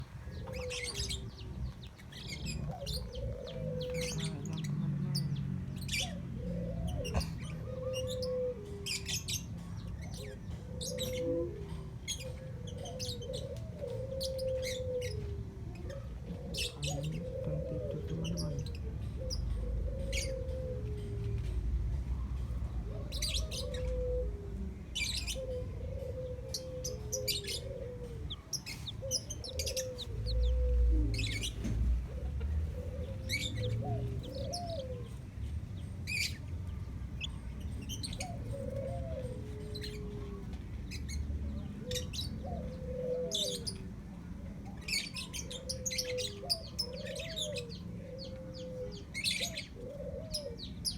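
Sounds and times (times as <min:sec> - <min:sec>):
birds chirping: 0:00.0 - 0:50.9
low rumble: 0:27.5 - 0:39.8.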